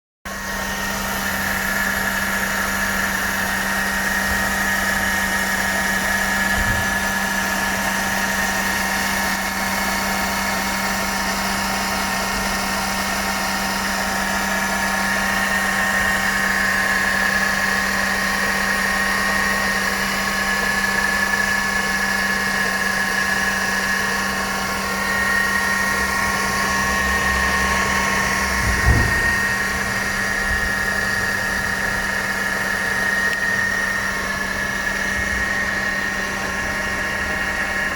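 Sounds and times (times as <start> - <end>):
car engine running: 0.3 - 37.9
supercharger whine: 0.3 - 37.9
brief low thump: 28.6 - 29.6.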